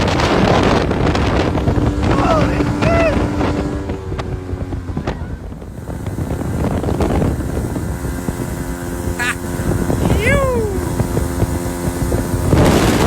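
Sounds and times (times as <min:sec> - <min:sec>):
outboard motor running: 0:00.0 - 0:13.0
wind buffeting microphone: 0:00.0 - 0:13.0
person calling out: 0:09.2 - 0:09.4, 0:10.1 - 0:11.0.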